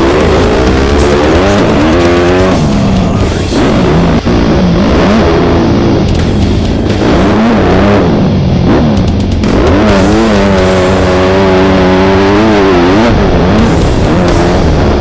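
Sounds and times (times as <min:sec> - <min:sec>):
dirt bike engine revving: 0:00.0 - 0:15.0.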